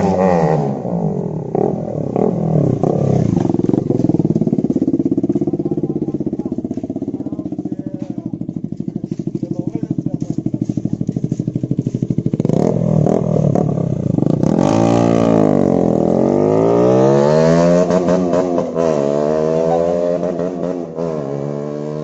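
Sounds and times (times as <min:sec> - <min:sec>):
motorcycle engine revving: 0:00.0 - 0:22.0.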